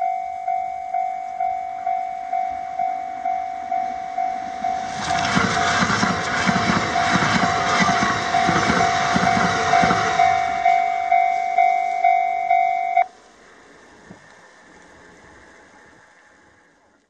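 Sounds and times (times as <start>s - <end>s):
level crossing warning bell: 0.0s - 13.1s
train wheels clattering over rails: 4.5s - 11.9s.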